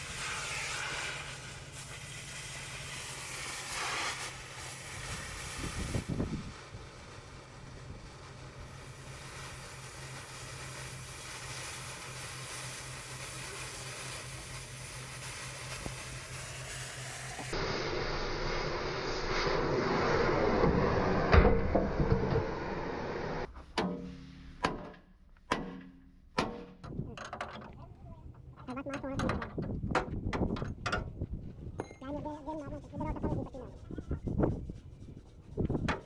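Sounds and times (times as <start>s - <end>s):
machine noise with heavy knock: 20.5s - 23.5s
sharp knocks: 23.8s - 26.9s.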